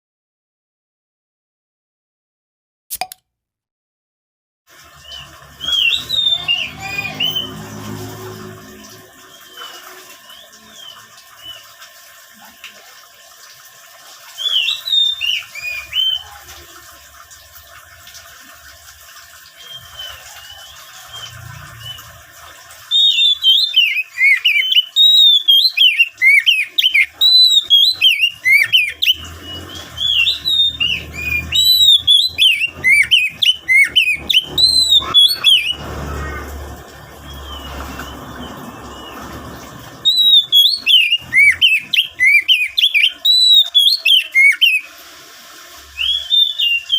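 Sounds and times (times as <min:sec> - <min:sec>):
songbird whistled phrases: 0:05.1 - 0:07.5, 0:14.4 - 0:16.4, 0:22.9 - 0:35.8, 0:40.0 - 0:44.9, 0:46.0 - 0:46.9.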